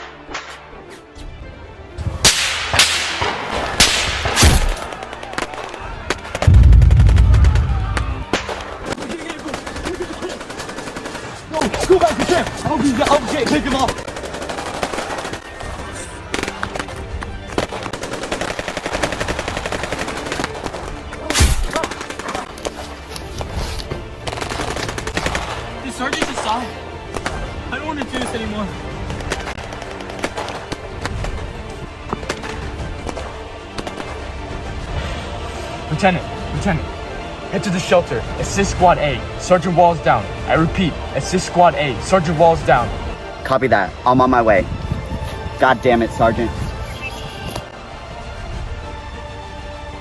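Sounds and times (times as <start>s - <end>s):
background music: 0.0s - 50.0s
battle cracks and bangs: 2.0s - 34.9s
heavy blast: 6.3s - 8.7s
loud deep boom: 6.4s - 8.4s
rapid automatic gunfire: 8.8s - 15.8s, 17.7s - 20.8s.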